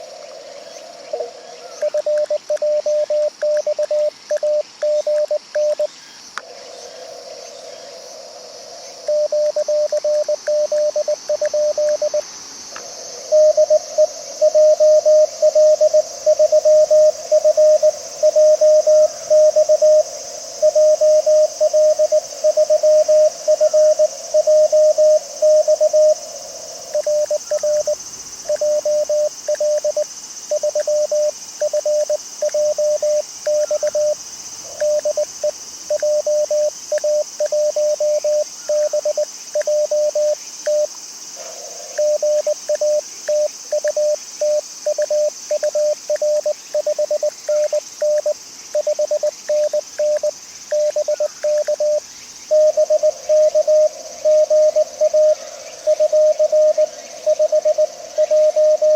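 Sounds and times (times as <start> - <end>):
morse code tone: 1.8 - 5.9, 9.1 - 12.2, 13.3 - 20.0, 27.0 - 34.2, 42.0 - 52.0.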